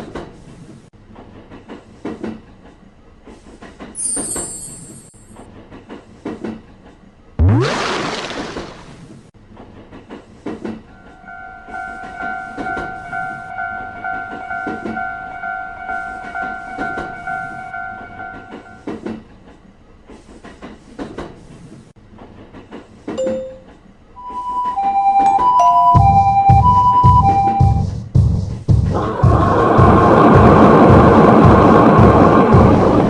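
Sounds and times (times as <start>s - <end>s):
train clacking past: 9.6s - 19.6s, 28.8s - 33.0s
railroad crossing alarm ringing: 11.0s - 18.8s, 23.2s - 27.8s.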